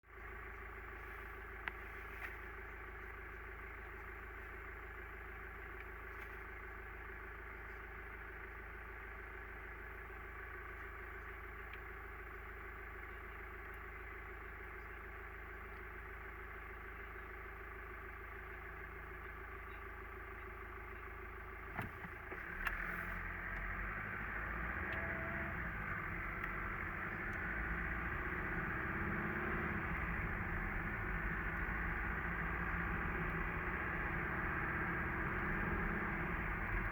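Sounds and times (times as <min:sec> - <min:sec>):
diesel engine humming: 0:00.0 - 0:36.9
clicks: 0:21.7 - 0:23.7.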